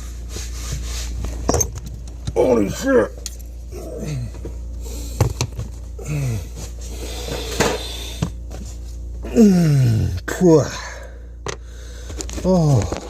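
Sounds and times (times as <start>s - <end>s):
man groaning with strain: 3.7s - 4.5s, 6.0s - 6.6s, 9.2s - 11.2s, 12.4s - 13.0s.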